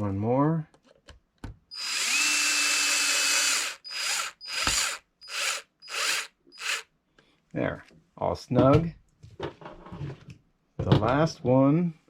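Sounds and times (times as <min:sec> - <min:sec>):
cordless screwdriver driving screw: 0:01.7 - 0:06.8.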